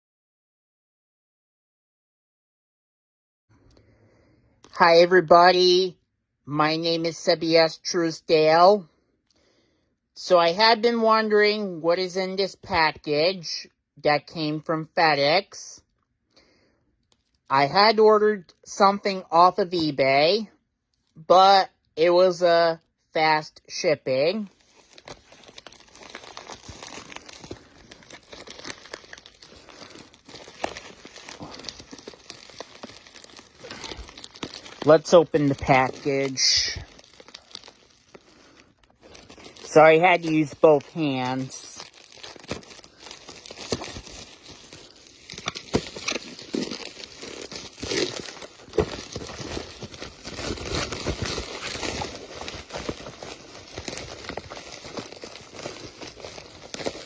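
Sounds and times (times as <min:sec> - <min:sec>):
package crinkling and crackling: 0:17.0 - 0:17.5, 0:24.5 - 0:57.0.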